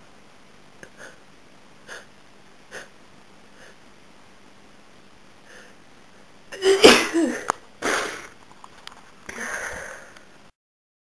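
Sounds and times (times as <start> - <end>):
quiet breath: 2.7 - 3.8, 5.4 - 6.3, 9.3 - 10.4
woman sneezing: 6.6 - 8.2.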